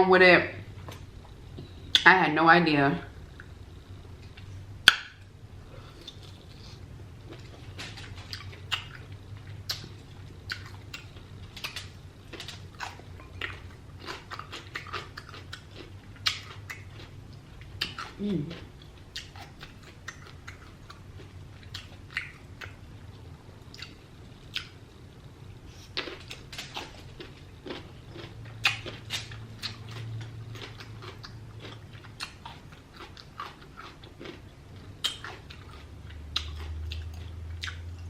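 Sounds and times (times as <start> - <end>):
low hum: 0.0 - 38.0
chewing and mouth sounds: 5.8 - 24.8, 25.7 - 38.0.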